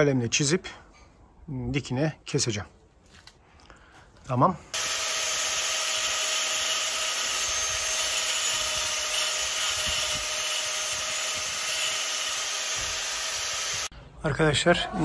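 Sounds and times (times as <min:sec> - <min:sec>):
electric power tool cutting board: 0:04.8 - 0:13.9.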